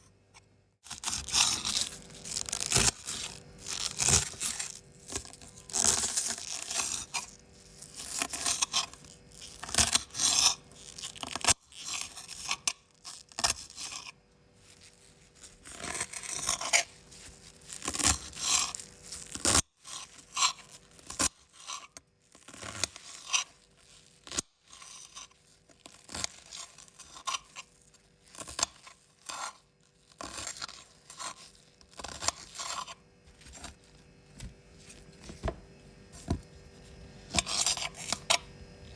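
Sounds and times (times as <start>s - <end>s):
knife slicing crisp vegetables: 0.9s - 12.6s.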